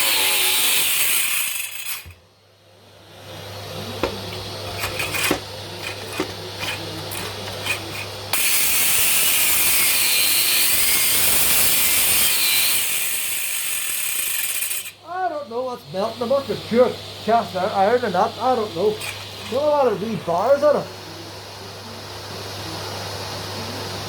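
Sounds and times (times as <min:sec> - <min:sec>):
stone saw cutting with whine: 0:00.0 - 0:02.2, 0:03.4 - 0:21.4
scraping and knocking: 0:04.0 - 0:08.2.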